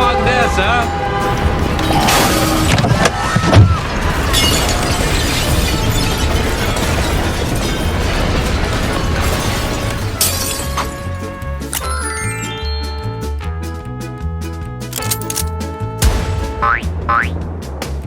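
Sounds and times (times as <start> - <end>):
crashing shattering sound effect: 1.6 - 11.0
background music with bass line: 12.5 - 18.0.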